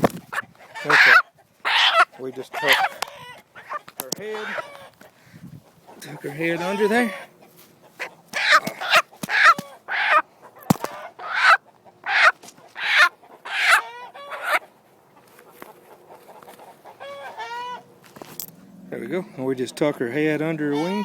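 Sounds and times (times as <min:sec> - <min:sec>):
hen clucking: 0:00.0 - 0:18.0, 0:18.6 - 0:21.0
hen squawking: 0:00.3 - 0:04.9, 0:05.9 - 0:14.7, 0:16.3 - 0:17.9, 0:20.6 - 0:21.0.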